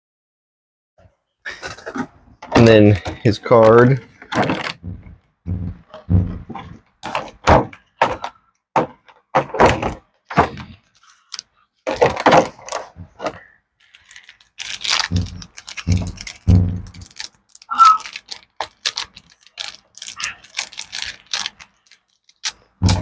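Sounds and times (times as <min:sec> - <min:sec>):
packaging thunks and rustles: 0:01.8 - 0:23.0.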